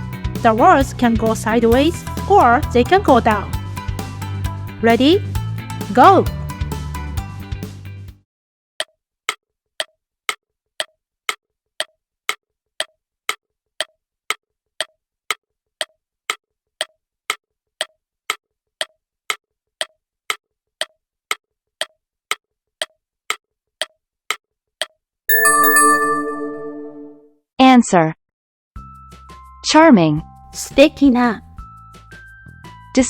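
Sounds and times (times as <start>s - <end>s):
bright chime: 25.3s - 27.2s.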